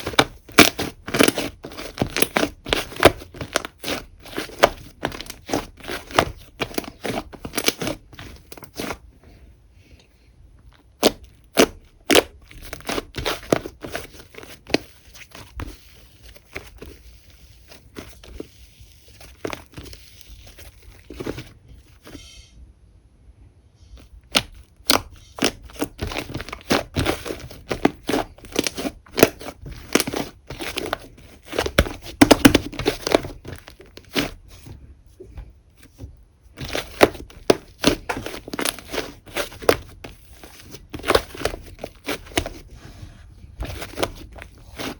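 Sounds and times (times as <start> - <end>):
slime squished by hand: 0.0 - 9.1, 10.6 - 22.2, 24.0 - 34.7, 36.5 - 42.7.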